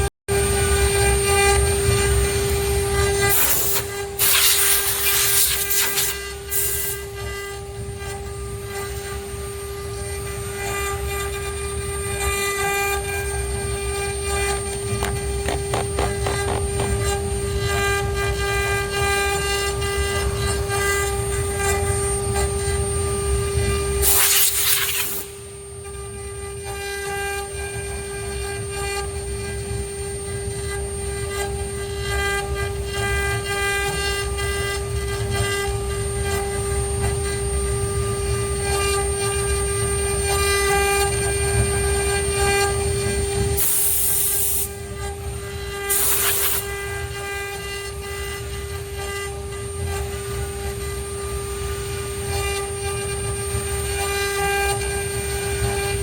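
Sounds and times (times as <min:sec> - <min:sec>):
cnc router spindle whine: 0:00.0 - 0:56.0
low machine rumble: 0:13.0 - 0:18.5.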